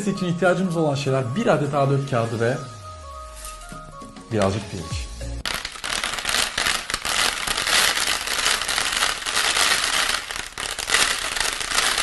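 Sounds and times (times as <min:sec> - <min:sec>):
rice pattering on paper: 0:05.5 - 0:12.0.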